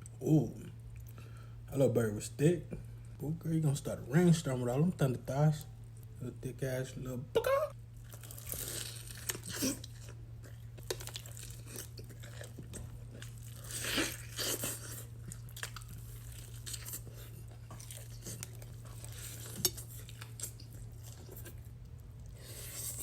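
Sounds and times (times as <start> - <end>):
crunchy bites and chewing: 8.0 - 23.0.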